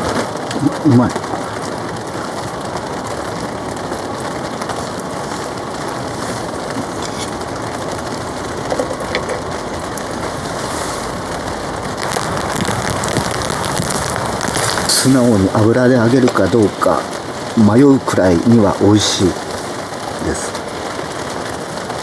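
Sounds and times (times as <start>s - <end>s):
heavy rain on a tarp: 0.0s - 22.0s.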